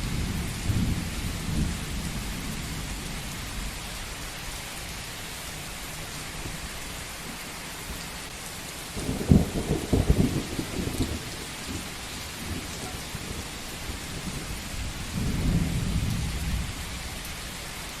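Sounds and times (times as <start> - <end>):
crackling roll of thunder: 0.0 - 5.0, 8.8 - 18.0
steady rain falling: 0.0 - 18.0.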